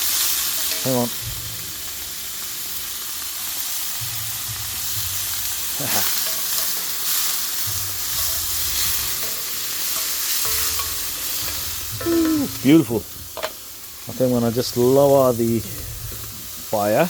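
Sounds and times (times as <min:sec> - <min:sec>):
chicken sizzling in oil: 0:00.0 - 0:17.0
spoon scraping pan: 0:05.9 - 0:13.6.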